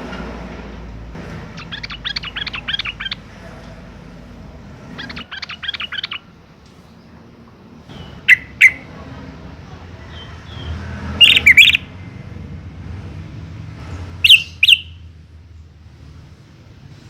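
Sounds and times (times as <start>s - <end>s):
bird chattering song: 1.5s - 3.6s, 4.9s - 6.4s, 7.9s - 9.0s, 10.1s - 11.9s, 14.2s - 15.1s.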